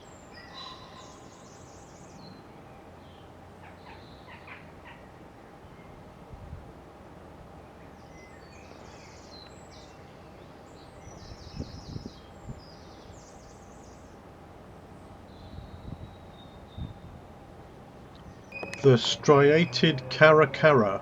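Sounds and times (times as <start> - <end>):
outdoor background noise: 0.0 - 21.0
songbird twittering: 18.2 - 20.3.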